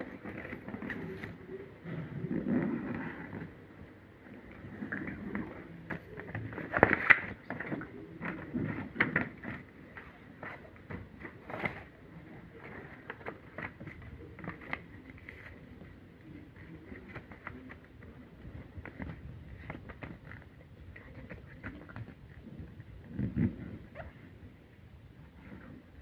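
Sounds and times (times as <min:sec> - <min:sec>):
paper rustling and crinkling: 0:00.0 - 0:01.7, 0:05.1 - 0:22.2.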